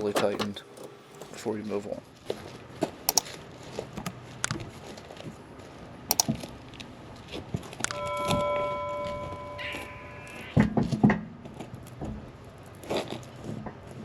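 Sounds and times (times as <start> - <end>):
steady multi-pitched ringing: 7.9 - 10.6.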